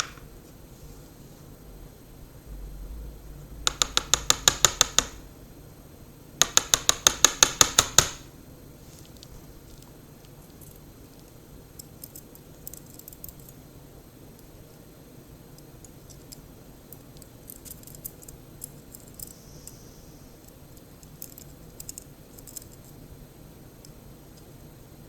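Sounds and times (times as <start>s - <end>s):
rapid metallic clicks: 3.6s - 5.2s, 6.4s - 8.2s.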